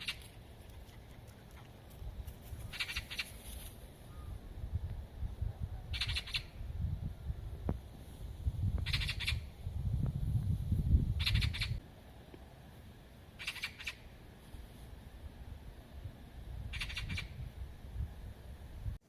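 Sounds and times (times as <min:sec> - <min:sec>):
bird rasping call: 0:02.7 - 0:03.4, 0:05.9 - 0:06.6, 0:08.8 - 0:09.5, 0:11.2 - 0:11.8, 0:13.4 - 0:14.1, 0:16.7 - 0:17.4.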